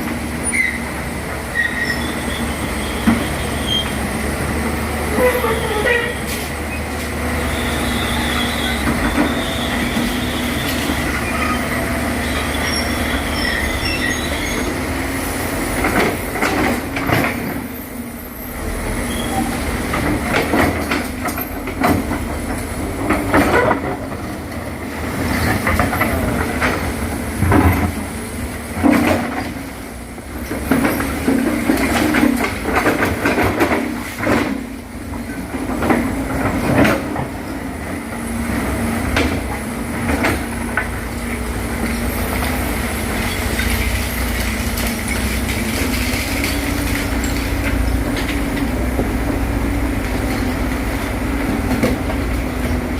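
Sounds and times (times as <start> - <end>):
steel tracks clanking: 0.0 - 52.9
metallic squeals: 11.2 - 14.8.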